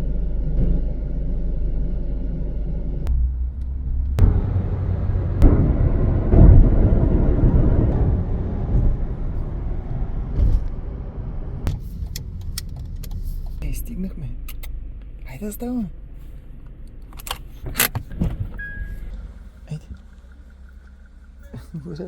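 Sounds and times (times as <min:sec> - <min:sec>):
car engine hum: 0:00.0 - 0:22.0
low rumble: 0:00.0 - 0:22.0
sharp clicks: 0:16.9 - 0:18.1.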